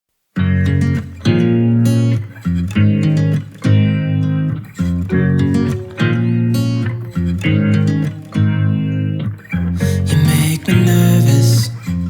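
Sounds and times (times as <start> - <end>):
strummed guitar chords: 0.4 - 12.0.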